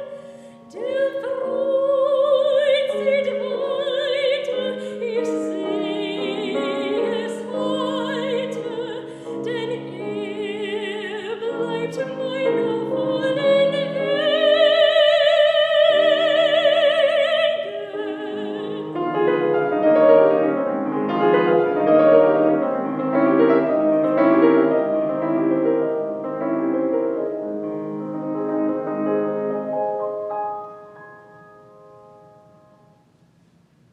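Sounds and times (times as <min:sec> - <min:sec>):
soprano singing with vibrato: 0:00.0 - 0:25.7
piano: 0:00.0 - 0:33.9.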